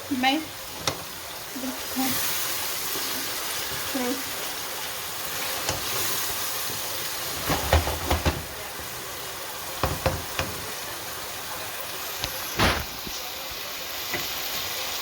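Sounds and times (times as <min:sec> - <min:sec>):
food sizzling in a pan: 0:00.0 - 0:15.0
utensil knocking against pan: 0:07.4 - 0:08.6, 0:09.8 - 0:10.6.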